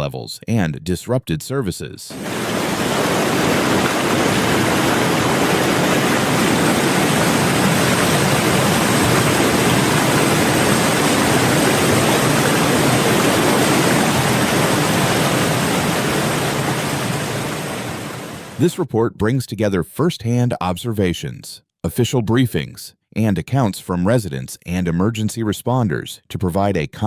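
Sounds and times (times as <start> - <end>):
loud rushing noise: 2.1 - 18.6.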